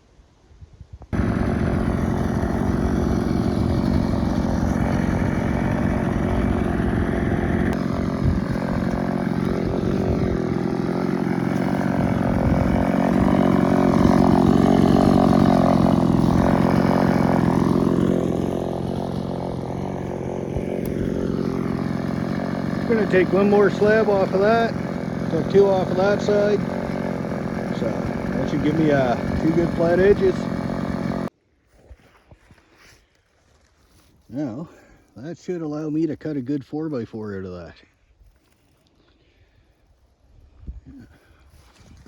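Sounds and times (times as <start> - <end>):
chainsaw cutting log: 1.1 - 31.3.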